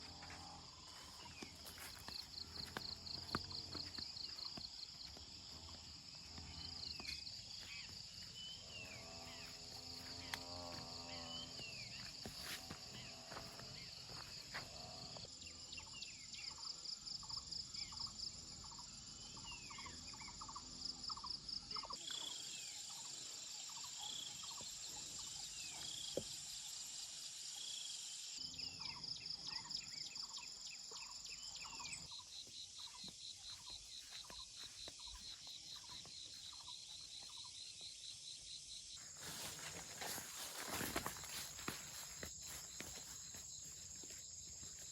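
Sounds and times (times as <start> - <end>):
small birds chirping: 0.0 - 14.8, 28.7 - 44.9
insects trilling: 0.0 - 44.9.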